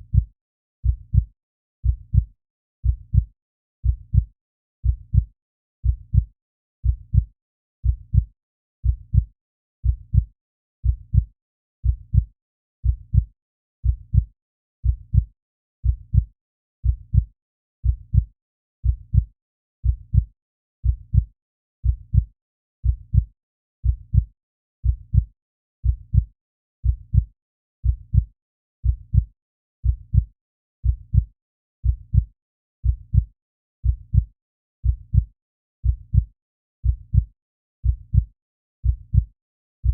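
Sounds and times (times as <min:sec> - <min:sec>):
heartbeat thumps: 0:00.8 - 0:04.3, 0:04.9 - 0:08.3, 0:34.1 - 0:39.9.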